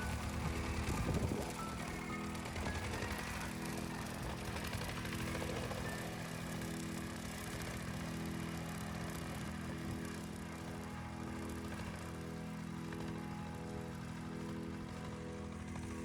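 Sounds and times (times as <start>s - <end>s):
truck engine running: 0.0s - 16.0s.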